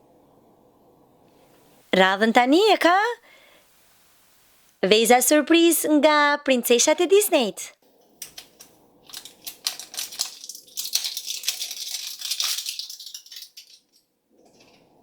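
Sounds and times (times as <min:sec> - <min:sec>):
wrapper crinkling and tearing: 0:08.3 - 0:14.0.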